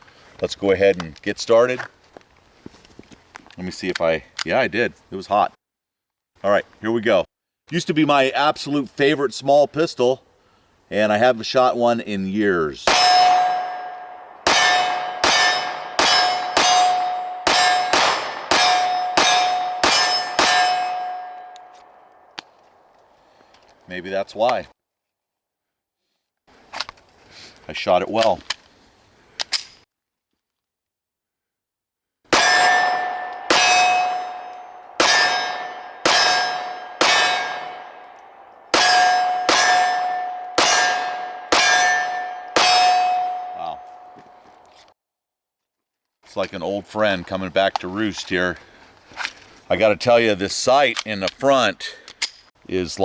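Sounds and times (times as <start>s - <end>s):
pistol shots: 12.9s - 22.2s, 32.3s - 43.5s
steel target clanging: 12.9s - 22.2s, 32.4s - 44.7s.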